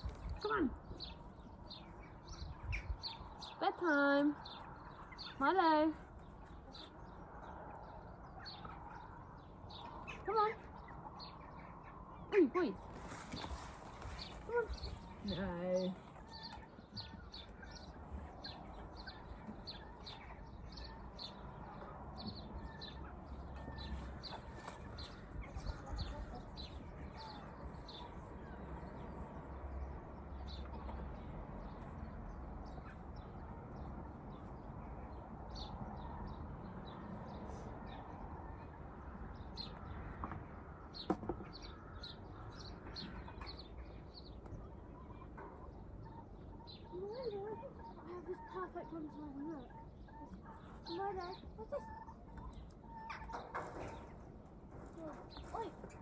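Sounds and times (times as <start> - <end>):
chickens clucking: 16.1 - 31.8, 42.8 - 56.0.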